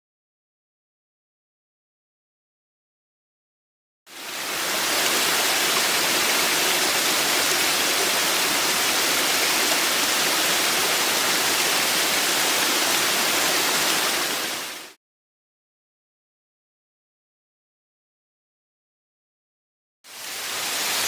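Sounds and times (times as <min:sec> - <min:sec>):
waterfall rushing: 0:04.1 - 0:15.0, 0:20.1 - 0:21.0.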